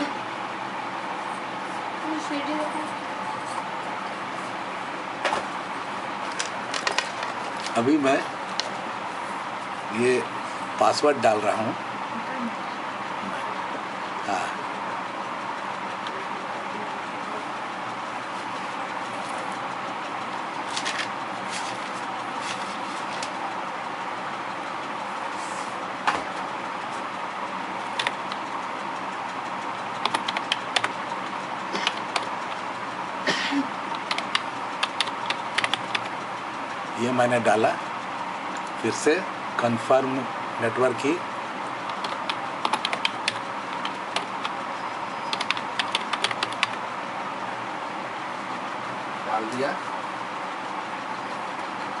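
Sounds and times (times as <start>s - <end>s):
steady background noise: 0.0s - 52.0s
keyboard typing: 6.2s - 8.8s, 27.8s - 33.0s, 33.7s - 37.8s, 40.9s - 46.9s
keyboard key presses: 28.0s - 28.4s, 30.0s - 31.0s, 31.8s - 32.3s, 33.9s - 36.1s, 41.9s - 44.6s, 45.3s - 46.8s.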